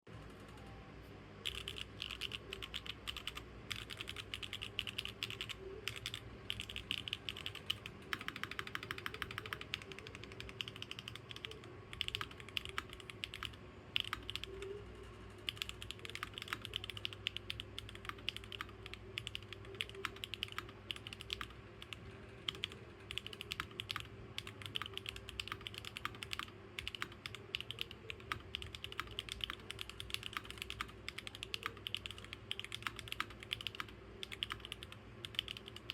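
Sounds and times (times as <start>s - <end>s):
mechanical keyboard typing: 1.4s - 14.8s, 15.4s - 35.9s.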